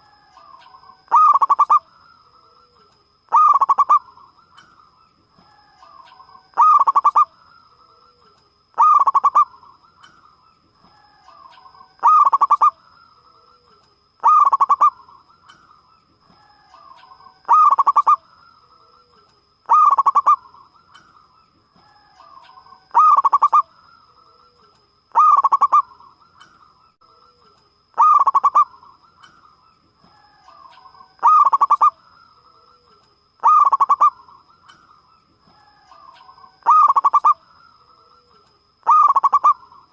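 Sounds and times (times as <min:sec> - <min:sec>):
dove cooing: 0:00.0 - 0:01.9, 0:02.5 - 0:04.4, 0:05.4 - 0:10.1, 0:10.8 - 0:15.3, 0:16.4 - 0:18.2, 0:18.8 - 0:21.0, 0:22.0 - 0:26.3, 0:28.0 - 0:29.3, 0:30.1 - 0:34.6, 0:35.6 - 0:37.4, 0:38.0 - 0:39.9.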